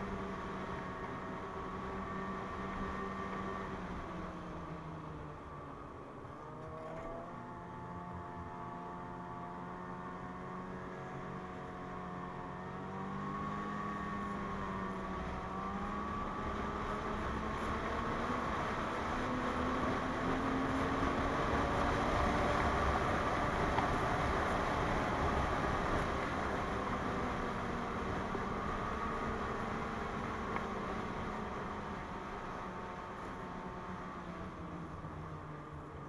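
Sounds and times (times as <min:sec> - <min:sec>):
snowmobile engine running: 0:10.0 - 0:36.0.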